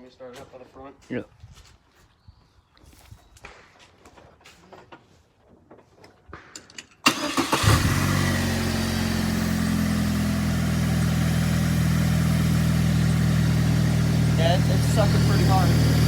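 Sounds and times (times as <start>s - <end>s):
car engine starting and idling: 7.0s - 16.0s.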